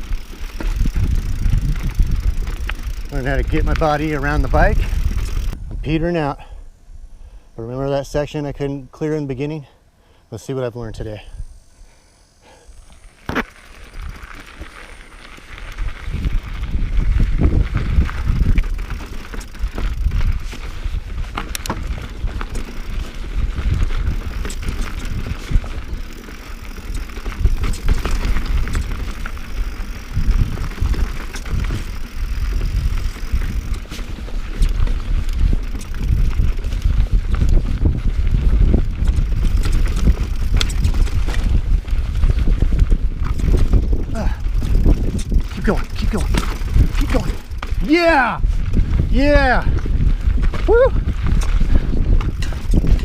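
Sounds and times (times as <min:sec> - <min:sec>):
bike tyres rolling on rocks: 0:00.0 - 0:05.6, 0:12.9 - 0:53.0
wheels knocking on rocks: 0:00.0 - 0:05.6, 0:13.0 - 0:53.0
wind buffeting microphone: 0:00.0 - 0:06.2, 0:15.3 - 0:53.0
chain and frame rattling: 0:24.1 - 0:36.8, 0:38.8 - 0:41.5, 0:43.2 - 0:47.9, 0:52.2 - 0:53.0.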